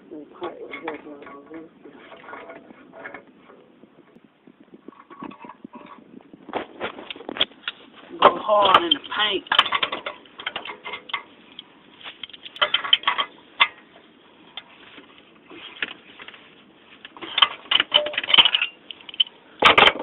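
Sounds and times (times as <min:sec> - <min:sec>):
metal clank: 0:00.4 - 0:03.7, 0:04.9 - 0:11.3, 0:12.0 - 0:14.7, 0:17.2 - 0:20.0.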